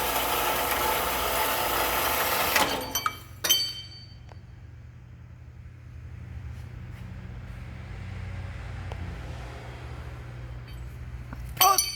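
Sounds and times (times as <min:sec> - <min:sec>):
bandsaw motor hum: 0:00.0 - 0:02.9.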